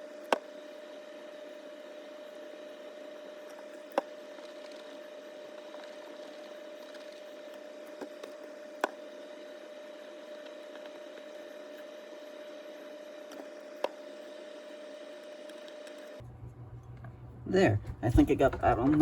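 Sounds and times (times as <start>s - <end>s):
steady hum: 0.0s - 19.0s.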